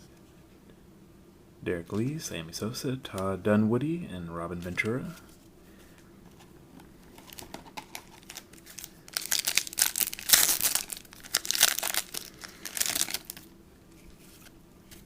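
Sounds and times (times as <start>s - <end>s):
wrapper tearing and crinkling: 7.2s - 13.5s.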